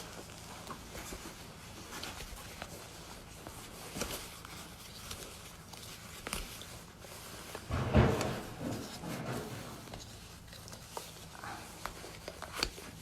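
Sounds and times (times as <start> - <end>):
scraping rustle: 0.0 - 13.0
light clicks and knocks: 7.5 - 12.8.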